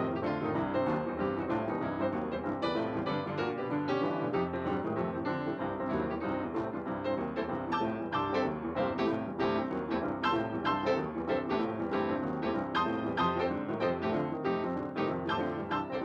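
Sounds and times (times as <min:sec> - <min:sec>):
piano background music: 0:00.0 - 0:16.0.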